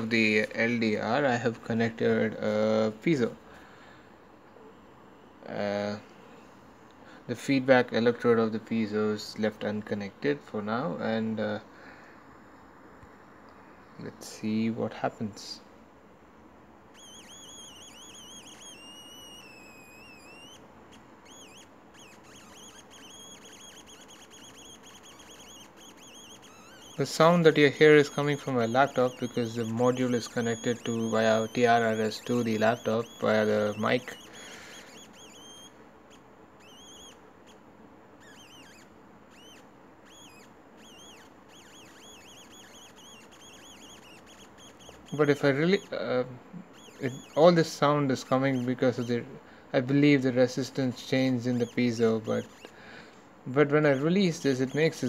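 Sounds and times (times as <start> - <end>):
high-pitched electronic tone: 17.0 - 20.6, 21.3 - 35.8, 38.2 - 49.1.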